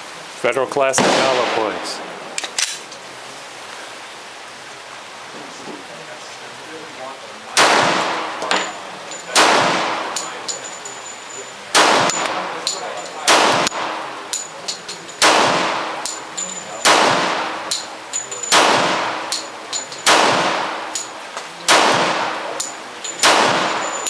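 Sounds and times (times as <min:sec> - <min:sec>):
pistol shots with ringing tail: 0:07.6 - 0:08.6, 0:09.3 - 0:10.6, 0:11.7 - 0:14.1, 0:15.2 - 0:24.0
brass casings pinging: 0:08.1 - 0:24.0.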